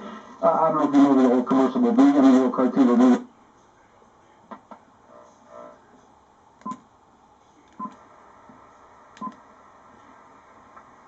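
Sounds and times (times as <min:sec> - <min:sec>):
faint receiver hiss: 0:07.6 - 0:11.0.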